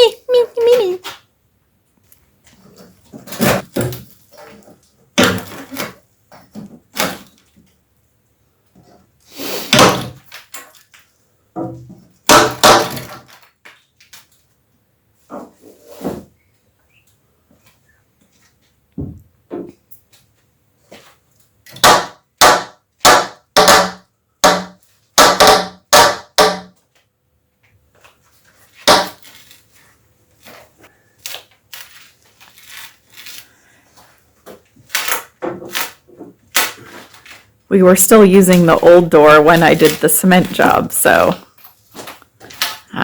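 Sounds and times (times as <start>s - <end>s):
hammer striking chisel: 21.8s - 26.7s.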